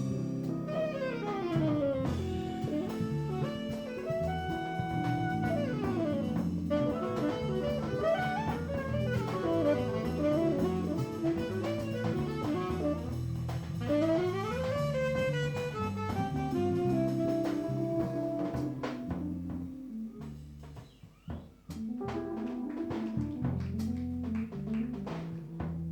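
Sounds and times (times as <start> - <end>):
double bass: 0.0 - 25.9
drum kit with cymbals: 0.0 - 25.9
saxophone improvising: 0.5 - 19.7
keyboard: 21.8 - 24.7.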